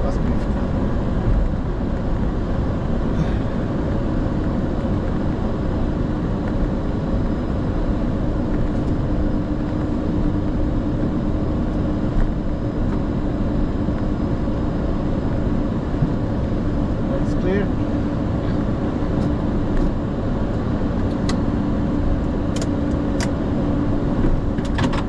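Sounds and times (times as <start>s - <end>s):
airframe and wheels rumble: 0.0s - 14.5s
jet engines near idle: 0.0s - 25.0s.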